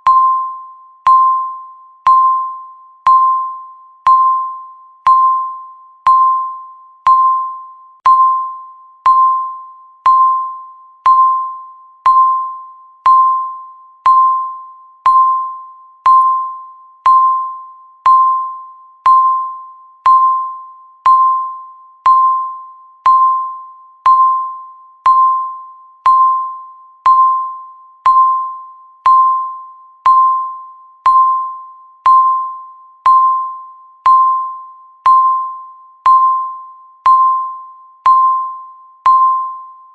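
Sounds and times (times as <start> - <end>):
countdown timer beeping: 0.0 - 39.9.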